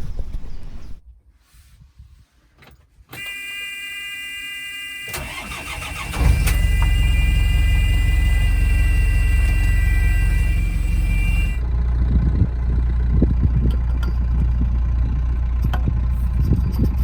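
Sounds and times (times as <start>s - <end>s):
warning buzzer: 3.2s - 11.6s
diesel engine starting and running: 3.2s - 17.0s.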